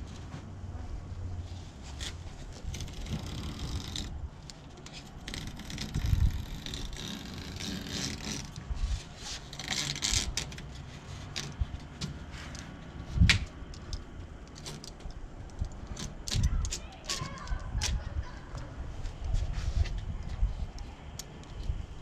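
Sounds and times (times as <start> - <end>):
screen door rattling and scraping: 1.7 - 18.9.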